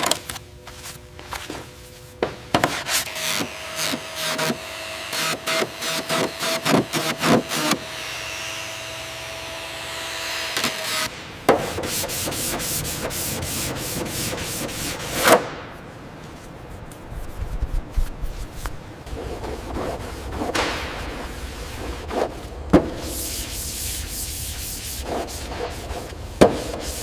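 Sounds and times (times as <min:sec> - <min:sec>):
sanding on metal: 0:11.7 - 0:15.3, 0:19.4 - 0:27.0.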